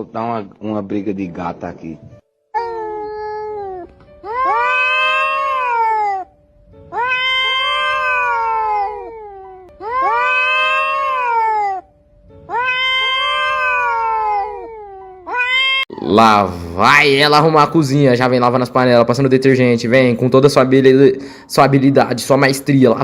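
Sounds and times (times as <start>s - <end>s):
cats yowling: 2.6s - 6.3s, 6.9s - 15.9s.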